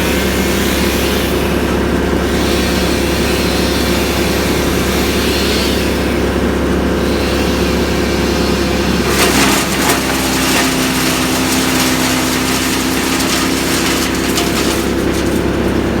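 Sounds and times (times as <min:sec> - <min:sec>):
engine running steadily: 0:00.0 - 0:16.0
rough crackling noise: 0:09.0 - 0:16.0.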